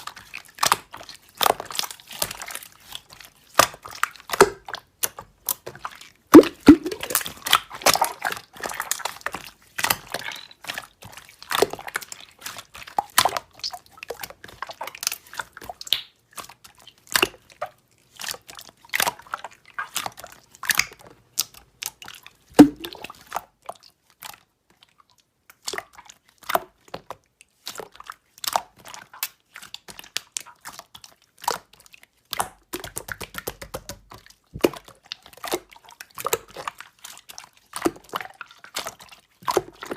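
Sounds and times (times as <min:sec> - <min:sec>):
slime squelches: 0:00.0 - 0:39.9
slime clicking and popping: 0:06.4 - 0:07.6, 0:22.6 - 0:23.0, 0:32.3 - 0:34.8.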